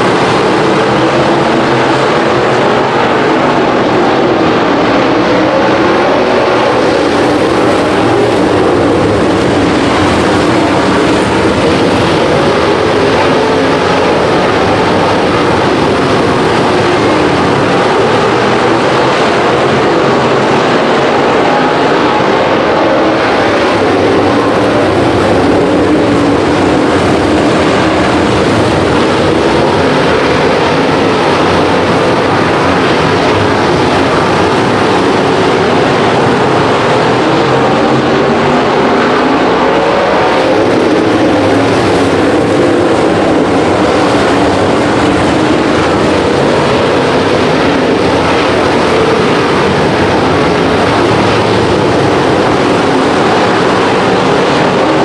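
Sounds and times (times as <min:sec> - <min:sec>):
race car engines roaring: 0:00.0 - 0:55.0.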